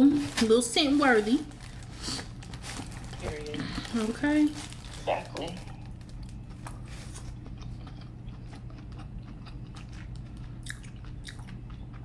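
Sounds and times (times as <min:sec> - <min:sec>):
low steady hum: 0:00.0 - 0:12.0
seafood shells crackling: 0:00.2 - 0:07.4
chewing: 0:05.0 - 0:12.0.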